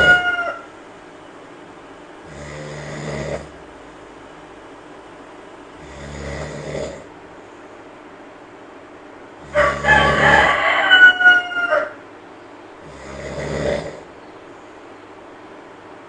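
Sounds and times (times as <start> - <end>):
drawn-out animal call: 0.0 - 0.6
monkey snoring: 2.2 - 3.7, 5.8 - 7.2, 9.4 - 10.5, 12.8 - 14.2.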